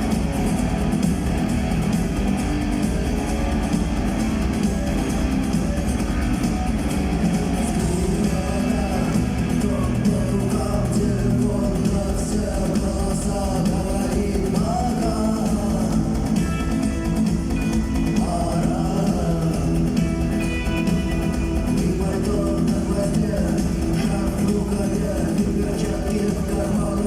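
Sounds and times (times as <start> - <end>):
live rock band: 0.0 - 27.0
person singing: 2.6 - 17.2, 17.9 - 27.0.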